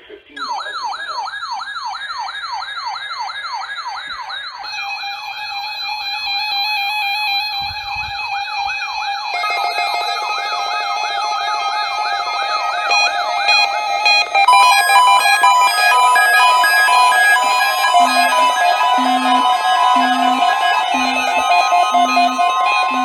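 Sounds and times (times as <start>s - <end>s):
beeping alarm tones: 0.4s - 23.0s
steady alarm tone: 0.4s - 23.0s
rising siren sweep: 9.0s - 23.0s.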